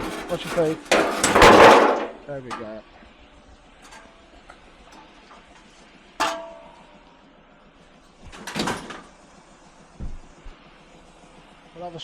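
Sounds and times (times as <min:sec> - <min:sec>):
scrap metal clang: 0:00.0 - 0:02.8, 0:03.8 - 0:04.3, 0:05.0 - 0:07.0
scrap metal clattering: 0:00.0 - 0:02.8, 0:03.8 - 0:06.9.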